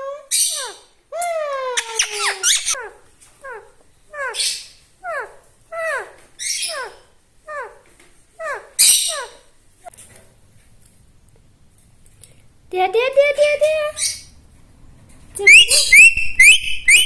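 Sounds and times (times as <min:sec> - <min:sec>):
parrot screeching: 0:01.8 - 0:02.9, 0:15.5 - 0:17.0.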